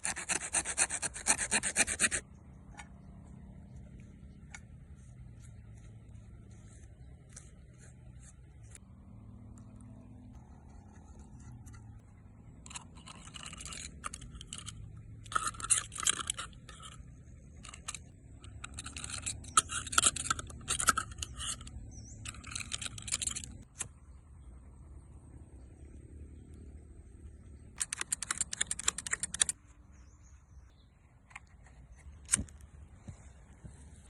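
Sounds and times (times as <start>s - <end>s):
hand scraping strokes: 0.0s - 2.3s, 4.8s - 8.8s.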